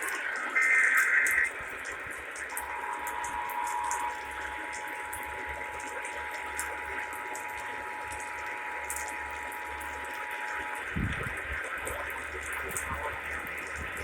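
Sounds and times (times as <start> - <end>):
static hiss with crackle: 0.0 - 14.0.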